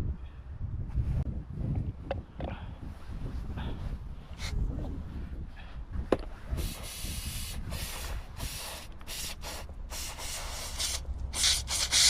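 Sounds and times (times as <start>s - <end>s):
hissing scrubbing noise: 6.5s - 12.0s.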